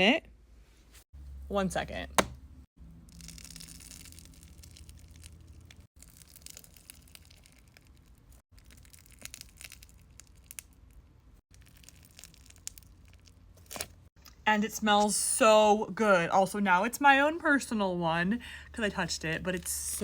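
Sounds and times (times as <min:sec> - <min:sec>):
crunchy slime crackling: 0:03.0 - 0:14.1.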